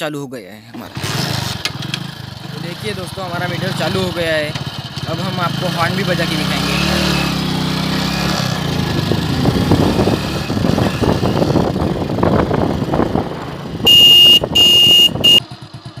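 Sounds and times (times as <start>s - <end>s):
motorcycle engine running: 0.9s - 16.0s
electric horn blasts: 13.8s - 15.5s.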